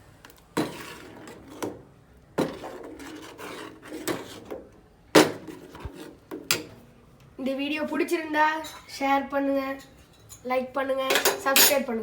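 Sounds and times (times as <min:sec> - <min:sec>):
pots and utensils clattering: 0:11.1 - 0:11.9.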